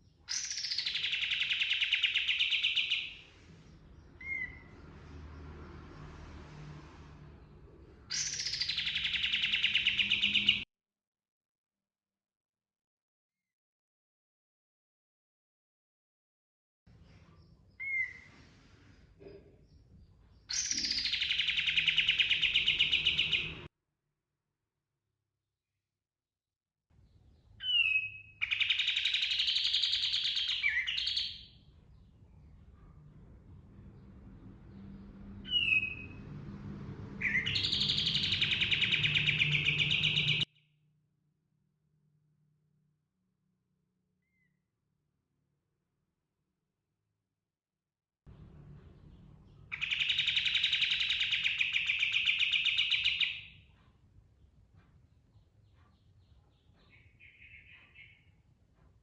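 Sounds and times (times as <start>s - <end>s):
bird whistled note and trill: 37.2s - 40.5s.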